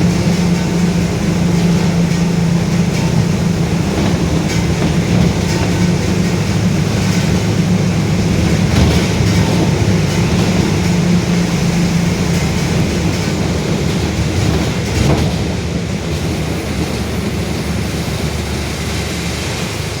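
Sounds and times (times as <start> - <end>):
bus differential droning: 0.0 - 20.0
rattling ride noise: 0.0 - 20.0.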